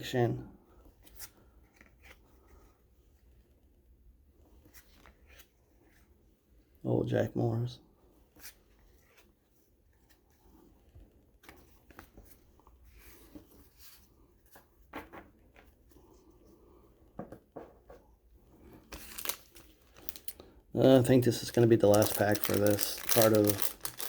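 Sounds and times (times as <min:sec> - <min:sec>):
cards rustling and clicking: 0:18.6 - 0:24.0.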